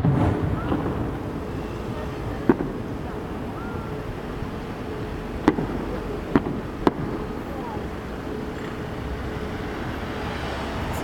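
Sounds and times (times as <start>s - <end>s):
fireworks bangs: 0.0s - 11.0s
steady background noise: 0.0s - 11.0s.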